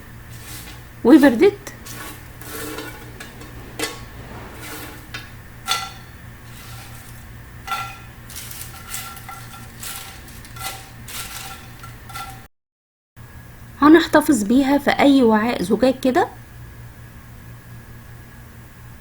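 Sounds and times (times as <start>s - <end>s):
corn flakes crackling and rattling: 5.7s - 12.5s.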